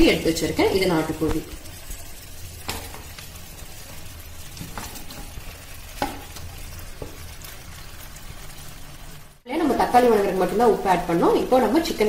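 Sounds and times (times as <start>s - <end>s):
chicken sizzling in hot oil: 0.0s - 12.0s
spoon scraping and knocking pan: 2.6s - 7.4s.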